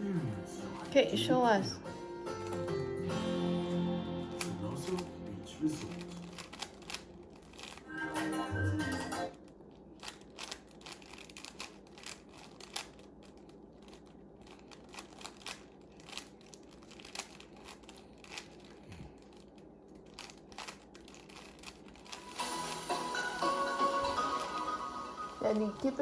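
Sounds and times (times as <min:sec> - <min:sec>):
puzzle cube layers clicking: 0:05.8 - 0:07.8, 0:10.0 - 0:26.0.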